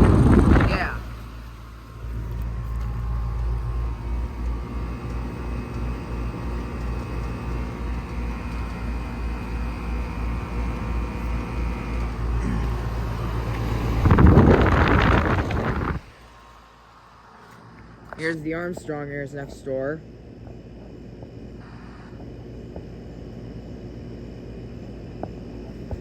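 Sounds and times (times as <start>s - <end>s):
rush of wind: 0.0s - 1.1s, 13.5s - 16.1s
air conditioner compressor humming: 0.0s - 26.0s.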